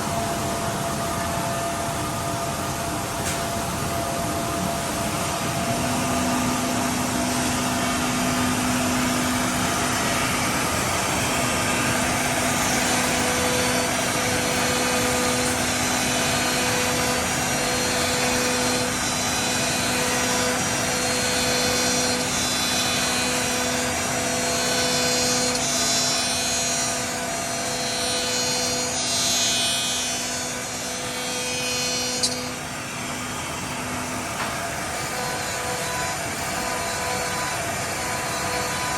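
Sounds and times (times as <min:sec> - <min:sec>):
machine spindle hum with cutting: 0:00.0 - 0:38.9
sharp click: 0:32.2 - 0:32.4.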